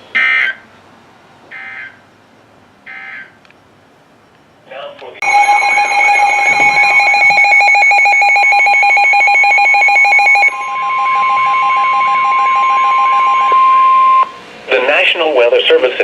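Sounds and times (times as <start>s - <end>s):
rapidly pulsing electronic beep: 5.2s - 14.3s
steady high alarm tone: 5.2s - 14.4s.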